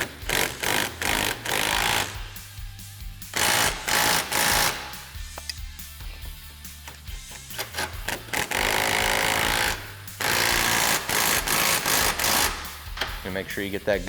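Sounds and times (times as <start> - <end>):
impact wrench hammering: 0.0 - 2.6, 3.2 - 13.3.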